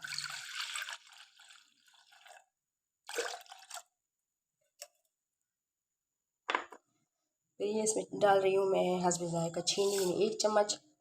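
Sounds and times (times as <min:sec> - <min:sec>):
milk pouring into saucepan: 0:00.0 - 0:04.1.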